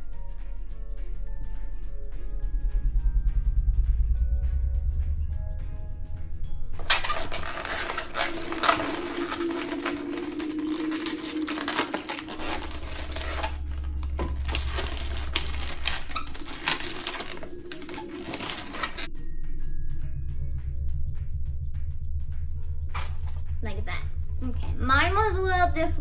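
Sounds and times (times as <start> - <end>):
background music: 0.0 - 20.6
balloons rubbing and squeaking: 6.8 - 19.1, 22.9 - 23.8.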